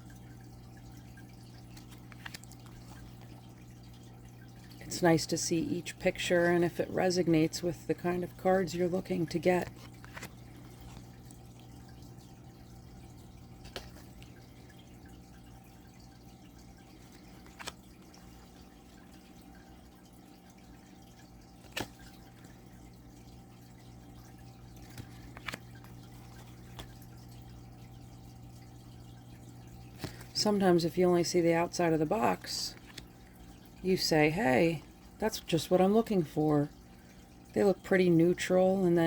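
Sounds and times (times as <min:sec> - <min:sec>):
low electrical hum: 0:00.0 - 0:39.0.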